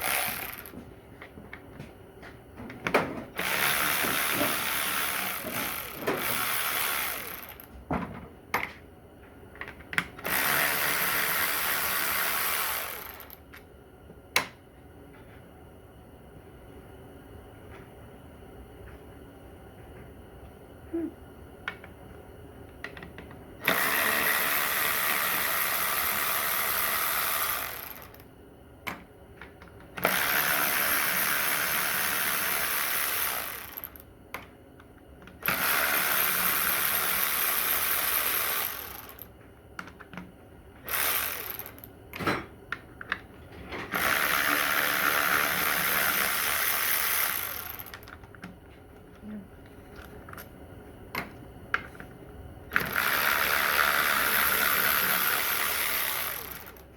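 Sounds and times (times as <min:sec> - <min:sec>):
air ratchet running: 0:00.0 - 0:00.7, 0:03.4 - 0:07.7, 0:25.2 - 0:28.2, 0:30.0 - 0:34.0, 0:35.4 - 0:39.3, 0:40.8 - 0:41.9, 0:43.9 - 0:48.1, 0:52.7 - 0:56.9.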